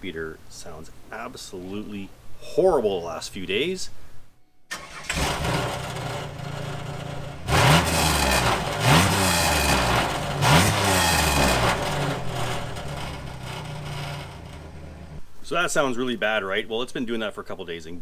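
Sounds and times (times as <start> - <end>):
car engine revving and idling: 5.0 - 15.3
muffler rattling: 5.1 - 15.3.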